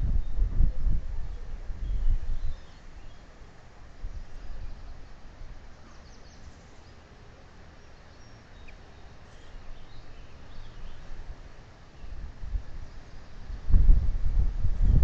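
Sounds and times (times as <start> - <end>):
wind buffeting microphone: 0.0 - 2.7, 12.0 - 15.0
faint high bird chirps: 7.8 - 11.1.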